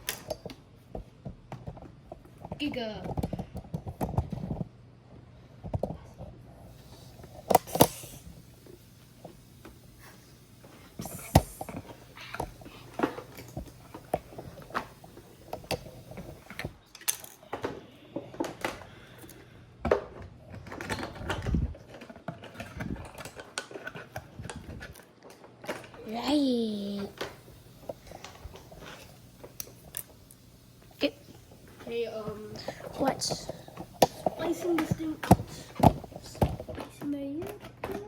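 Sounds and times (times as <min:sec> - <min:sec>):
plastic toy and packaging rustling: 0:19.9 - 0:38.0.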